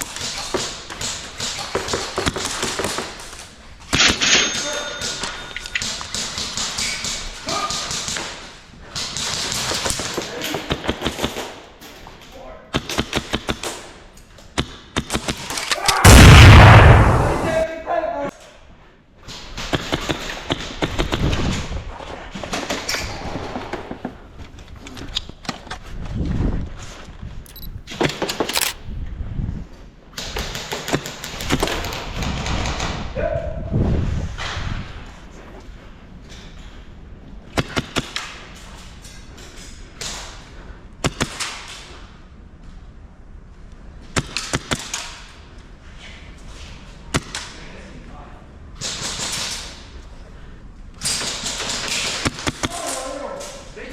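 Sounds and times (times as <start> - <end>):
airsoft rifle shots: 28.4 - 28.8.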